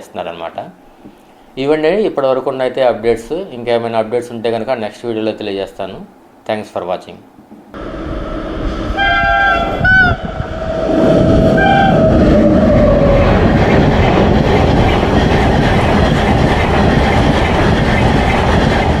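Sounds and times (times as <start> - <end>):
train horn blasts: 7.8 - 12.1
train passing rumble: 7.8 - 19.0
wheels clacking on rails: 11.2 - 19.0.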